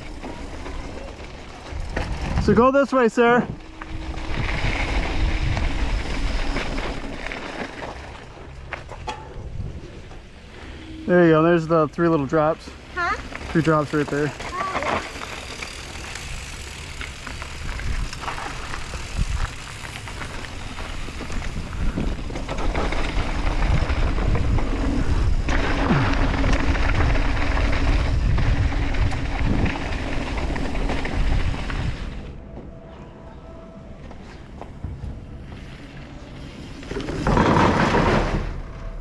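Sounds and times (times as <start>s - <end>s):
tyres rumbling over dirt: 0.0s - 32.5s, 34.8s - 39.0s
wind buffeting microphone: 1.7s - 2.6s, 3.4s - 7.1s, 17.4s - 32.3s.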